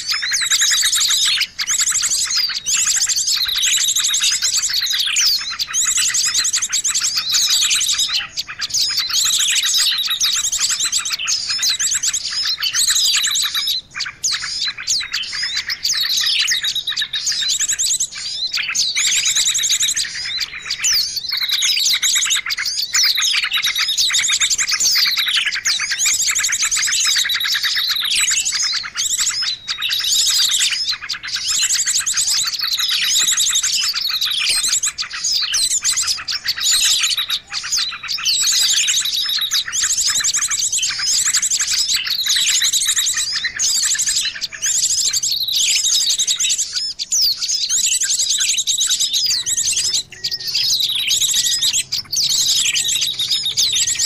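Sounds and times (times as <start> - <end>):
songbirds chirping and trilling: 0.0 - 54.0.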